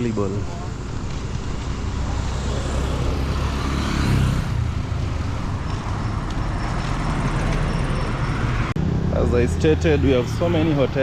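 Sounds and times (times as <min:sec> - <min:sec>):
road traffic rumble: 0:00.0 - 0:11.0.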